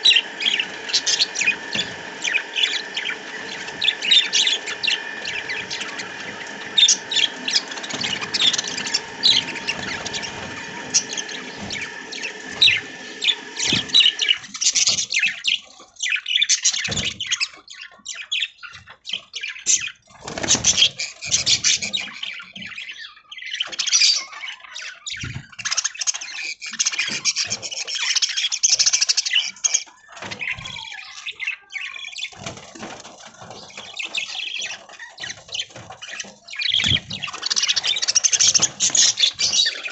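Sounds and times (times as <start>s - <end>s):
steady hum: 0.0s - 14.5s
budgerigars chirping and squawking: 0.0s - 39.9s.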